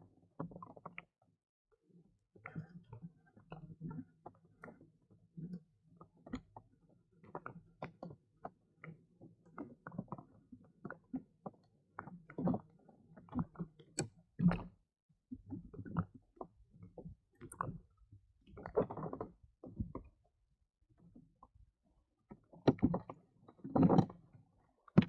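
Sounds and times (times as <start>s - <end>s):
knocks and clicks on kayak: 22.6s - 24.2s.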